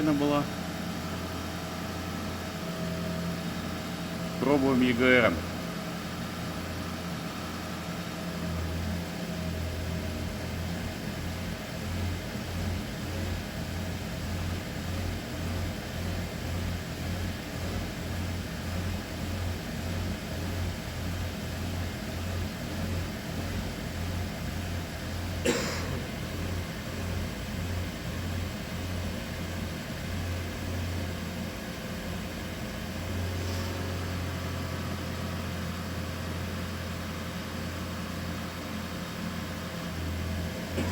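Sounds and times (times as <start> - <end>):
car engine running: 0.0 - 36.0
rhythmic engine knocking: 9.7 - 32.0.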